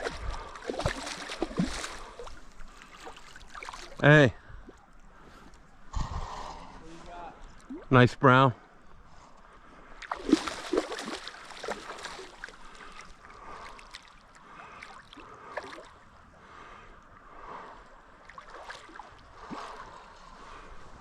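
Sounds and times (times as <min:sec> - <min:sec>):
creek water splashing: 0:00.0 - 0:05.7, 0:09.5 - 0:21.0.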